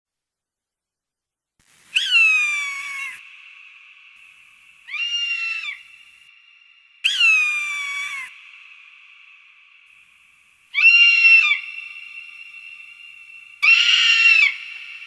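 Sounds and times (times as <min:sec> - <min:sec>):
falcon screeching calls: 0:02.0 - 0:03.2, 0:04.9 - 0:06.2, 0:07.0 - 0:08.7, 0:10.7 - 0:15.0.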